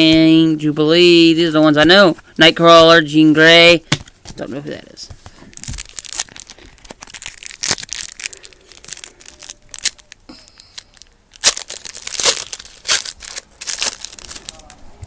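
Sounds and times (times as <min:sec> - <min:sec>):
cards rustling: 0:03.8 - 0:14.9
card pack wrapper crinkling: 0:05.5 - 0:14.8.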